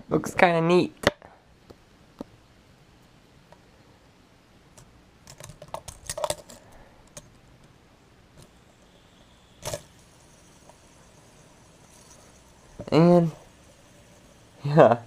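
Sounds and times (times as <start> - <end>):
fidget spinner clattering: 4.8 - 7.4, 8.4 - 15.0
fidget spinners clicking and rattling: 8.4 - 15.0.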